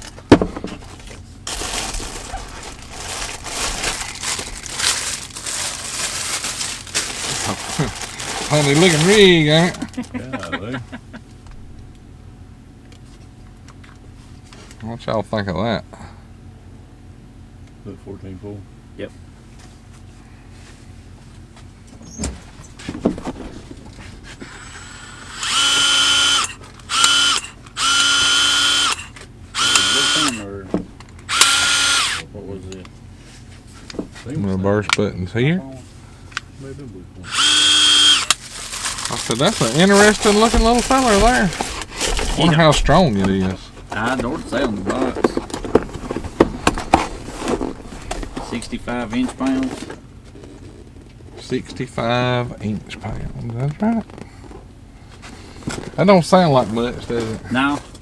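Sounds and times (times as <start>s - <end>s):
packaging crinkling and rustling: 0.8s - 10.1s, 37.3s - 51.2s
cordless drill whining: 8.1s - 9.8s, 24.4s - 30.5s, 31.3s - 32.2s, 37.2s - 38.4s, 39.3s - 42.5s.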